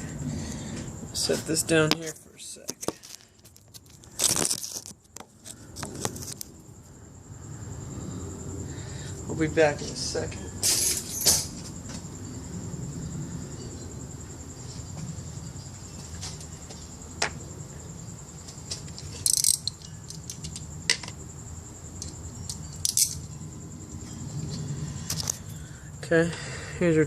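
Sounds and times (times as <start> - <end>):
hand tools clinking: 10.6 - 11.6, 19.0 - 21.1, 22.0 - 23.3.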